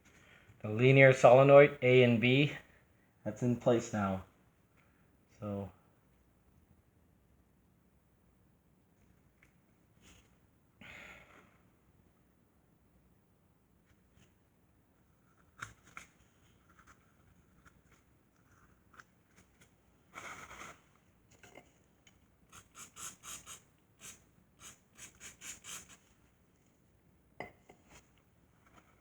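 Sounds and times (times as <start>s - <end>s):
clicks and light scrapes: 9.0s - 10.4s, 15.2s - 22.3s.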